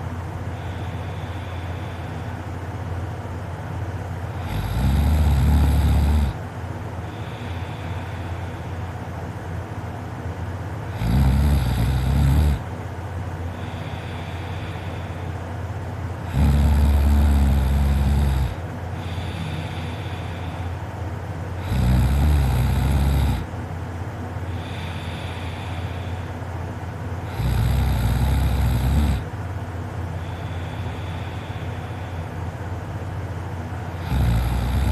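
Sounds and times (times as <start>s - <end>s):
person snoring: 4.3s - 6.4s, 10.9s - 12.7s, 16.2s - 20.8s, 21.6s - 23.5s, 24.5s - 26.3s, 27.2s - 29.3s, 33.9s - 34.9s.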